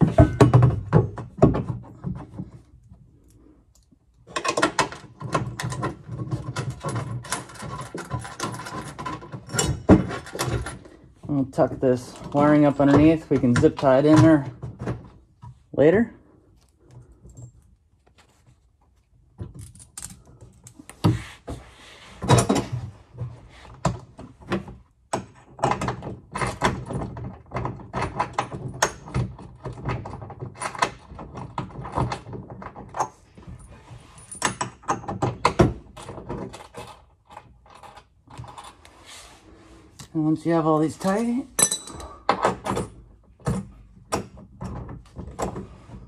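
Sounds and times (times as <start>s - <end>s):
tool knocks and clicks: 0.0s - 2.6s
metallic clatter of hand tools: 4.3s - 11.0s, 40.8s - 42.9s.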